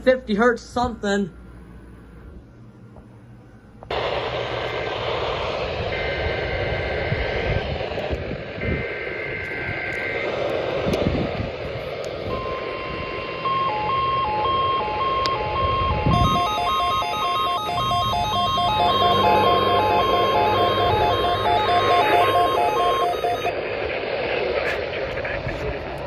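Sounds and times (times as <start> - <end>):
radio static hiss: 3.9 - 12.5, 19.8 - 26.0
short electronic tones: 12.3 - 23.6
tone switching between two pitches: 13.4 - 23.5.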